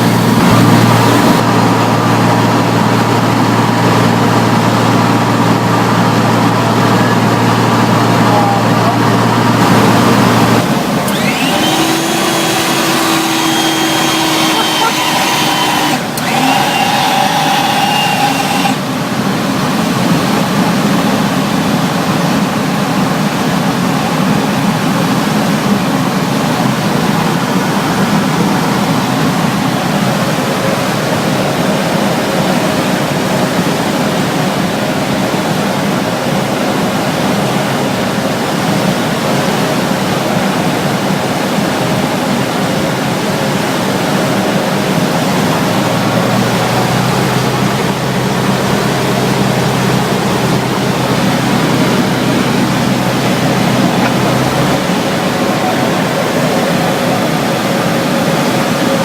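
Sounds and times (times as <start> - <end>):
propeller plane engine drone: 0.0 - 59.0
airflow noise: 43.4 - 59.0.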